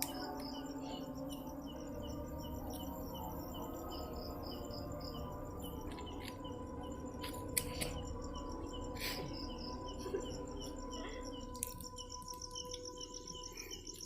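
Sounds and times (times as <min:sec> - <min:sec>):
crickets chirping: 0:00.0 - 0:14.0
steady thin drone: 0:00.0 - 0:14.0.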